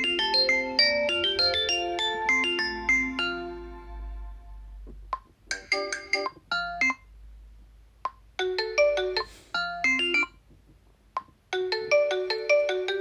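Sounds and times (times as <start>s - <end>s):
electronic ringtone melody: 0.0s - 4.4s, 5.5s - 7.1s, 8.4s - 10.4s, 11.6s - 13.0s.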